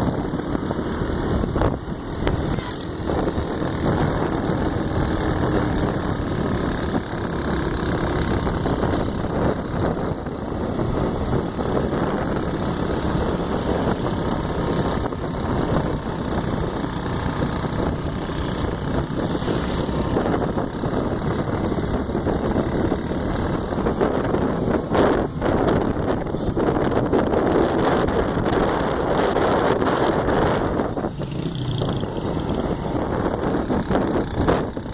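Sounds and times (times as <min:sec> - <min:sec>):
continuous rushing noise: 0:00.0 - 0:34.9
vehicle engine running: 0:00.0 - 0:34.9.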